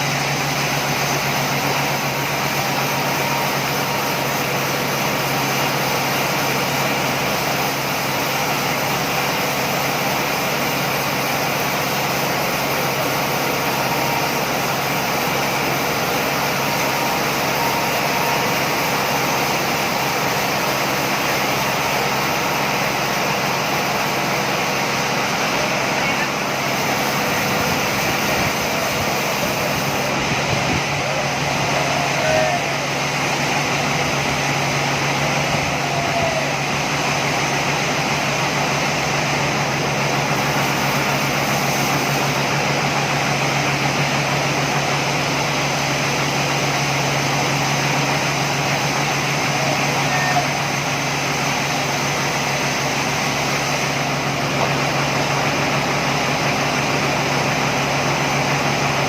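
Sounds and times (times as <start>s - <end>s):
engine drone: 0.0s - 59.0s.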